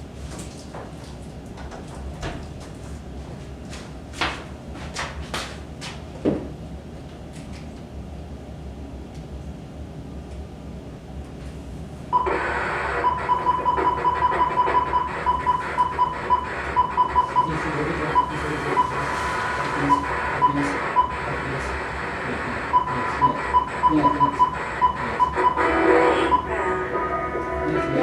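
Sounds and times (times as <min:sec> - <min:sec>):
radio static hiss: 0:12.2 - 0:13.1, 0:16.5 - 0:28.0
short beeps: 0:13.0 - 0:19.0, 0:22.7 - 0:26.8.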